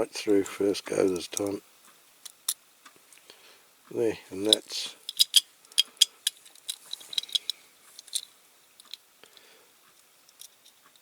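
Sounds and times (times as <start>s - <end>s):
metal toy parts clicking: 4.4s - 9.0s.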